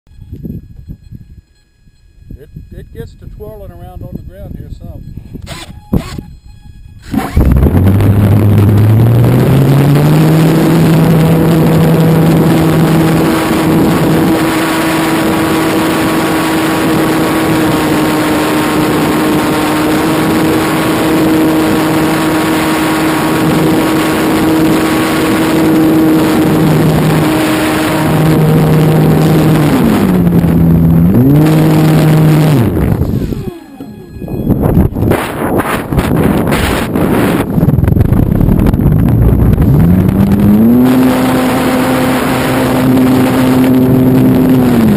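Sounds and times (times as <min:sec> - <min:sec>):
model plane electric motor: 0:05.0 - 0:08.1, 0:31.9 - 0:35.4.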